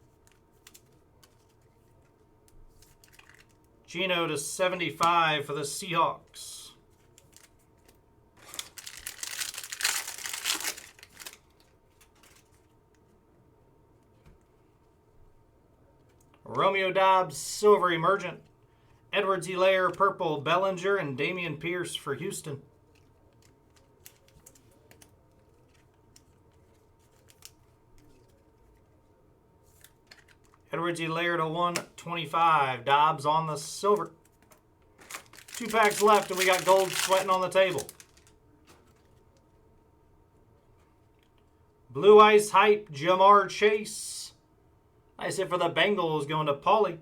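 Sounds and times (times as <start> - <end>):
cards being shuffled on table: 0.2 - 3.6, 33.9 - 39.2
foil wrapper tearing and crinkling: 2.9 - 3.6, 8.4 - 12.6, 35.0 - 38.3.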